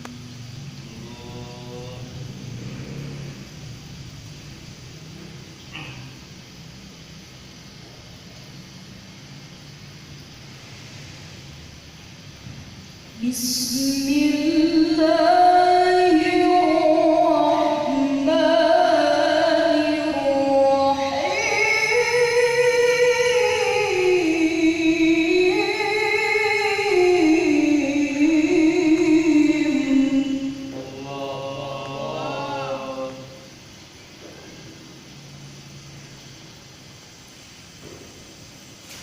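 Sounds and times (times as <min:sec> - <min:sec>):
woman reciting melodically: 0:13.1 - 0:33.5.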